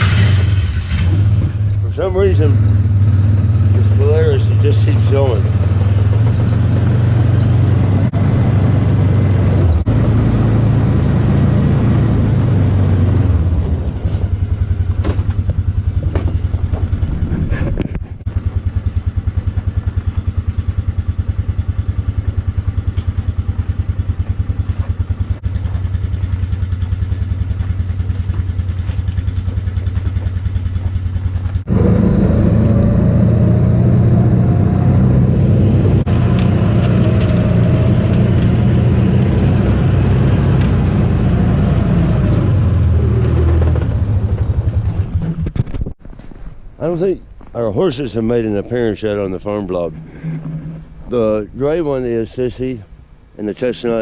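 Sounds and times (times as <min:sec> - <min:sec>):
utility vehicle engine running: 0:00.0 - 0:54.0.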